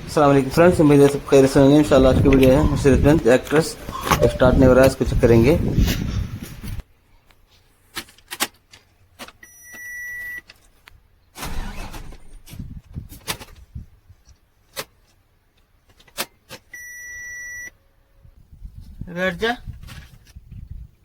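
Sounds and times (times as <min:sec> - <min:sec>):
electronic beep: 0:09.4 - 0:10.4, 0:16.8 - 0:17.7
rustling clattering noise: 0:10.4 - 0:16.7, 0:19.6 - 0:20.8.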